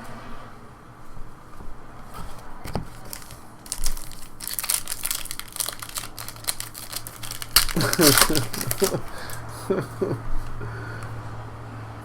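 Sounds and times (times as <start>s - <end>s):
foil wrapper crinkling and tearing: 2.7s - 10.2s.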